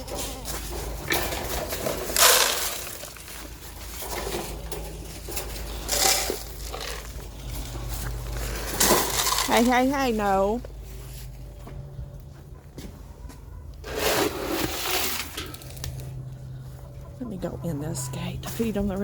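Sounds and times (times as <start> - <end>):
grain rustling and scraping: 0.0 - 9.8, 13.8 - 16.0
grain pouring: 2.1 - 3.3, 13.9 - 15.4.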